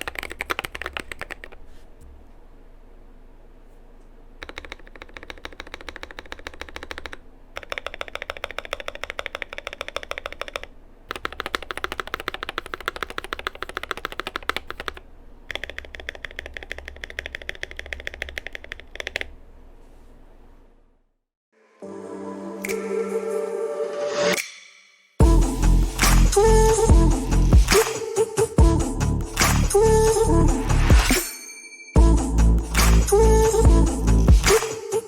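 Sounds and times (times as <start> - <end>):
keyboard keys slapped rapidly: 0.0 - 1.6, 4.4 - 19.3.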